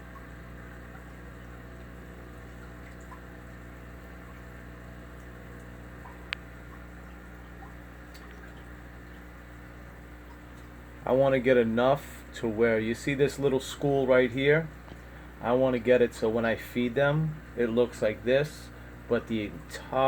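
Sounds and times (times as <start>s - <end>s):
water drips: 0.0s - 11.1s, 14.6s - 15.4s
water trickling: 0.0s - 16.6s
aquarium pump humming: 0.0s - 20.0s.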